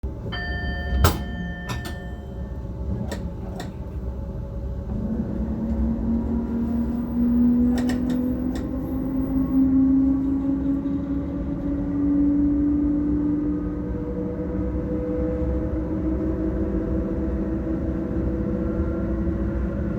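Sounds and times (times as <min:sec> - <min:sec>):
high tone: 0:00.3 - 0:02.7
knocks and clicks: 0:00.8 - 0:02.4.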